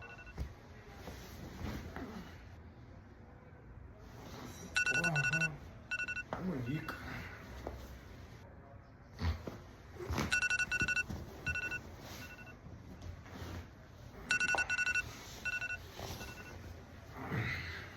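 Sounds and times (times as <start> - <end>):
electronic ringing trill: 4.8 - 6.2, 10.3 - 12.5, 14.3 - 16.6.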